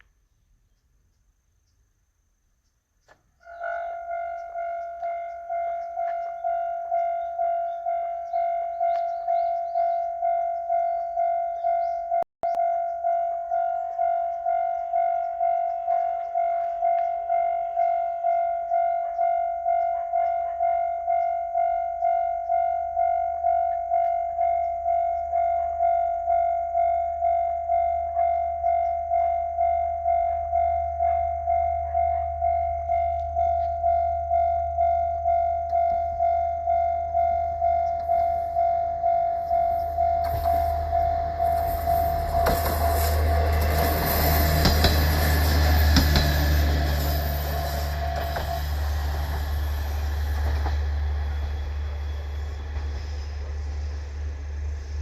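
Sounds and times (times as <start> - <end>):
train rumble: 3.4 - 55.0
level-crossing alarm dinging: 3.5 - 53.0
low rumble: 31.8 - 55.0
wheels clacking over rail joints: 37.7 - 53.0.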